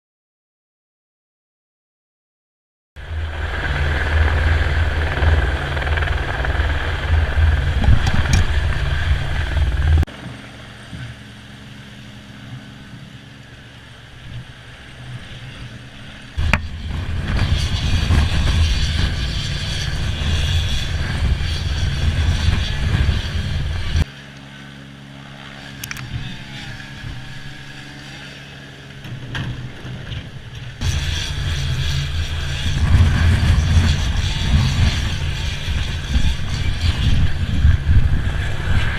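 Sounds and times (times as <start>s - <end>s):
helicopter engine and rotor: 3.0s - 38.9s.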